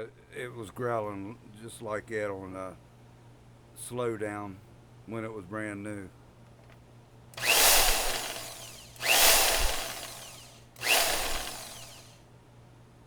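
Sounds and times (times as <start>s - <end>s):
band saw starting and winding down: 7.4s - 12.2s.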